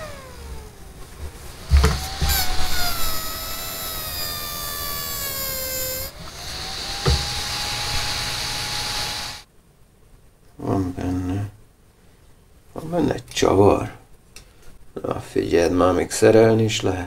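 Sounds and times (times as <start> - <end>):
power tool motor whining: 0.0 - 9.4.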